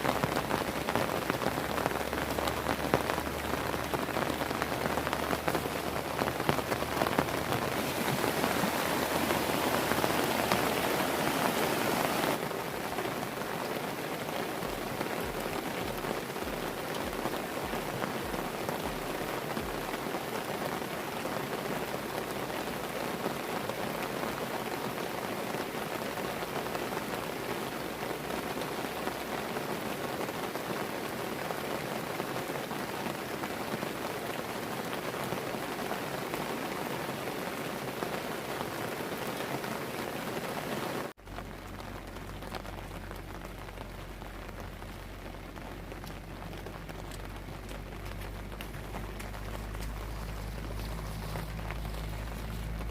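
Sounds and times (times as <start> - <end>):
heavy rain falling: 0.0 - 52.9
low steady hum: 41.5 - 52.9.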